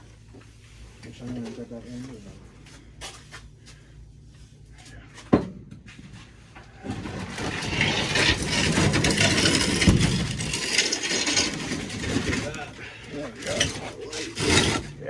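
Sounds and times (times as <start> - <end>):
rough rattling scrape: 6.8 - 15.0.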